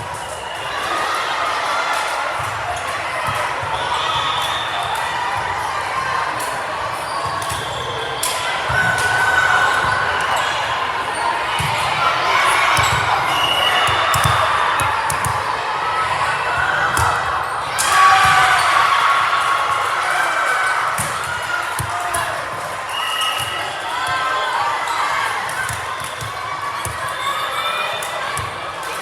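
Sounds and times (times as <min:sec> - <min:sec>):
crowd and player voices: 0:00.0 - 0:29.0
volleyball hits and bounces: 0:11.6 - 0:15.5, 0:16.5 - 0:18.8, 0:20.8 - 0:22.8, 0:25.4 - 0:27.2.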